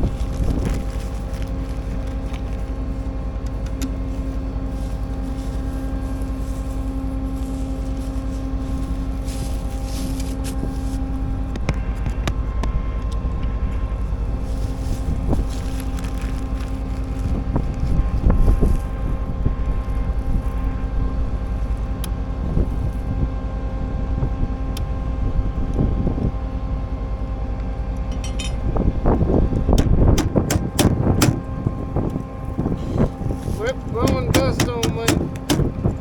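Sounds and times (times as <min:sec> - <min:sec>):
combine harvester droning: 0:00.0 - 0:36.0
irregular knocks and rattles: 0:29.8 - 0:31.4, 0:34.1 - 0:35.8.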